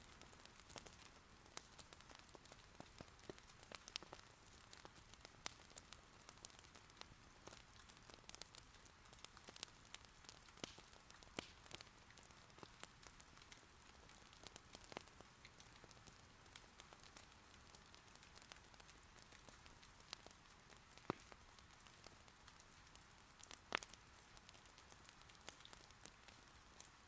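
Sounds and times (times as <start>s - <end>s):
burning wood crackling: 0.0s - 27.0s
rain patter: 0.0s - 27.0s.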